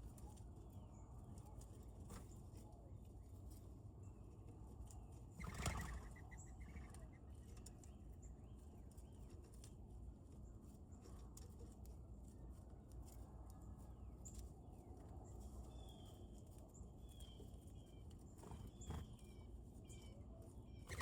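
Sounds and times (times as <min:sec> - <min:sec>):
low steady outdoor background: 0:00.0 - 0:21.0
faint short bird chirps: 0:05.4 - 0:07.2, 0:20.8 - 0:21.0.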